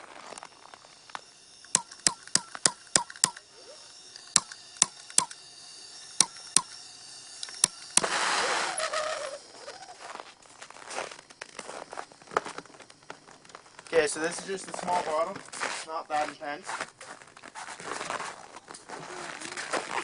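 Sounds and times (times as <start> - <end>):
blowtorch hissing rush: 7.6 - 10.0.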